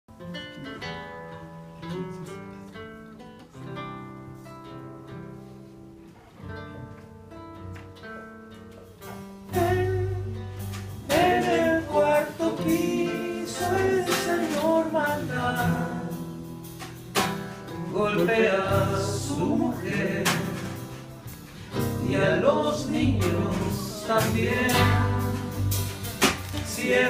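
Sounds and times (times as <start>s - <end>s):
acoustic guitar picking notes: 0.1s - 27.0s
full band playing: 5.4s - 27.0s.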